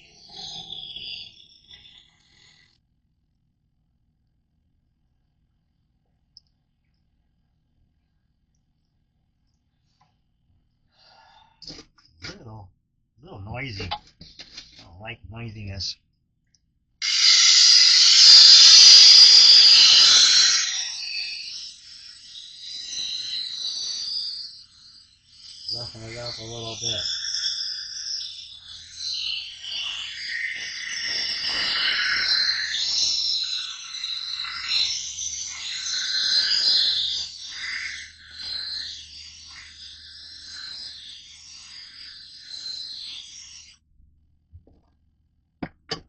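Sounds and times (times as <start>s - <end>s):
knife scraping on grinding wheel: 17.0s - 24.6s
knife grinding on sharpening wheel: 17.0s - 25.7s, 26.7s - 43.8s.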